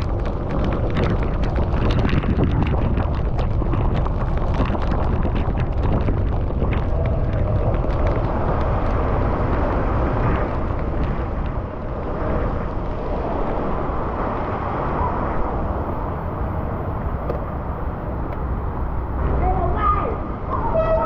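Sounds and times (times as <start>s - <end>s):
low rumble: 0.0s - 21.0s
wind buffeting microphone: 0.0s - 21.0s
traffic: 7.0s - 21.0s.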